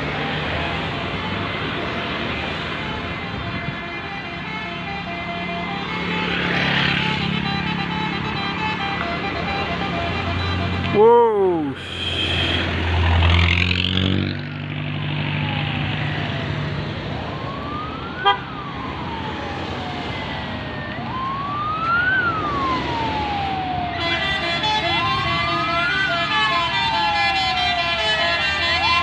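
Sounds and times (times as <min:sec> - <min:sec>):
ambulance siren wailing: 0:00.0 - 0:29.0
road traffic: 0:00.0 - 0:29.0.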